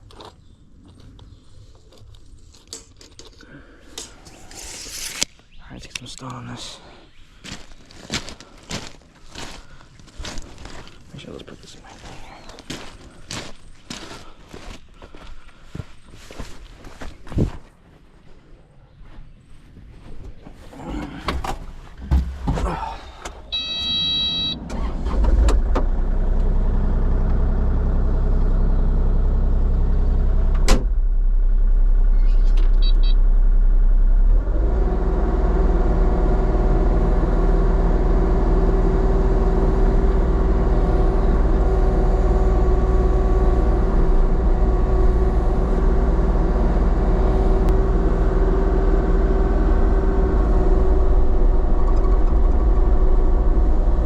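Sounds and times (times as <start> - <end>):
diesel engine starting and revving: 20.7 - 54.0
electronic warning beep: 23.5 - 24.6, 32.8 - 33.2.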